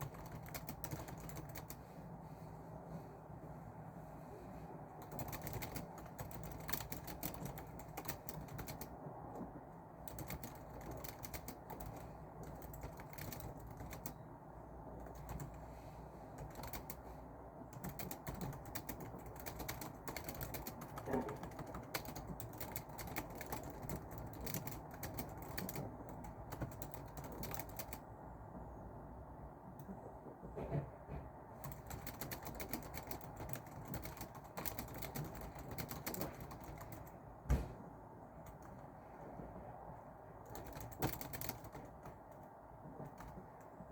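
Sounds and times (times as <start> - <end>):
typing on a keyboard: 0.0 - 1.8, 5.0 - 14.2, 14.9 - 15.6, 16.4 - 28.1, 31.6 - 37.2, 38.4 - 38.8, 40.4 - 43.9
low background noise: 0.0 - 43.9.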